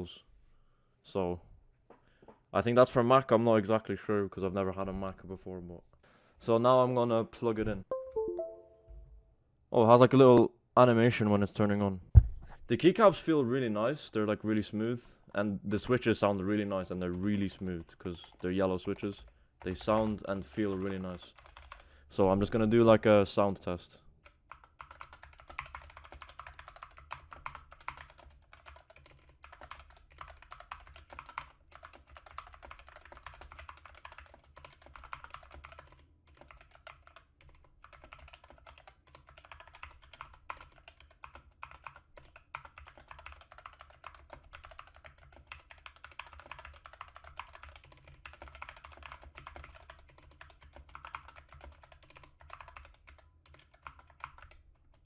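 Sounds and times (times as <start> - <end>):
mechanical keyboard typing: 17.0 - 21.8, 24.2 - 55.0.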